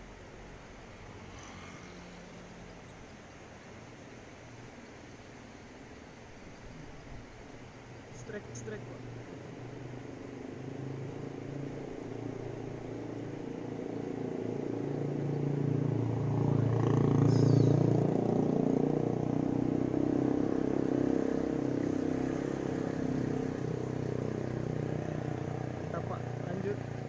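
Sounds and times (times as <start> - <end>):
vehicle engine passing by: 1.0 - 3.1, 8.1 - 27.0.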